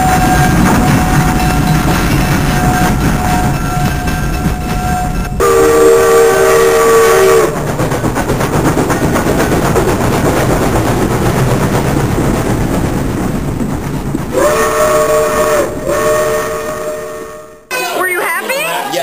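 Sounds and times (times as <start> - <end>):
rumbling rattling noise: 0.0 - 5.4, 7.3 - 16.1
train horn chord: 4.9 - 7.6, 14.4 - 17.8.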